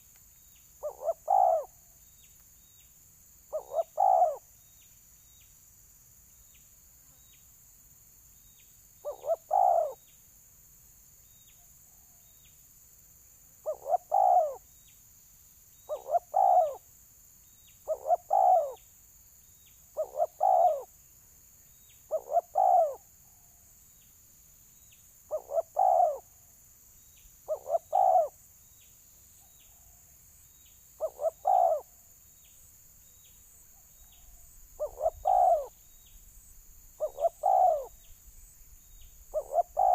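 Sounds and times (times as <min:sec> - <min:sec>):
dove cooing: 0:00.8 - 0:01.8, 0:03.5 - 0:04.4, 0:09.0 - 0:10.0, 0:13.6 - 0:14.6, 0:15.9 - 0:16.8, 0:17.8 - 0:18.8, 0:20.0 - 0:20.9, 0:22.1 - 0:23.1, 0:25.3 - 0:26.3, 0:27.5 - 0:28.4, 0:31.0 - 0:31.9, 0:34.2 - 0:35.8, 0:37.0 - 0:38.0, 0:39.3 - 0:39.9.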